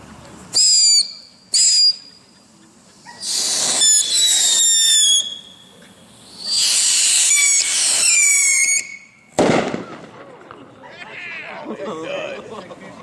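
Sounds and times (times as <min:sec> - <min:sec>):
firework shrill whistles with hiss: 0:00.5 - 0:02.1, 0:03.0 - 0:09.9.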